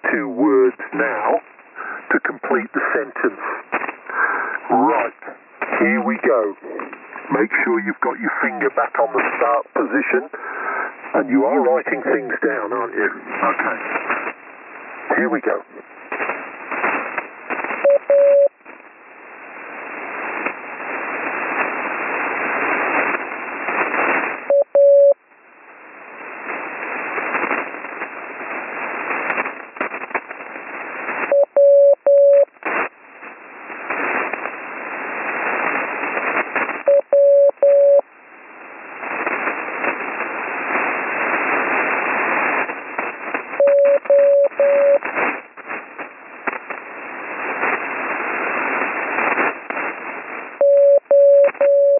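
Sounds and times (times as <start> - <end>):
radio band noise hiss: 0.0 - 51.9
morse code tones: 17.9 - 18.5, 24.5 - 25.2, 31.3 - 32.5, 36.9 - 38.0, 43.6 - 45.0, 50.6 - 51.9.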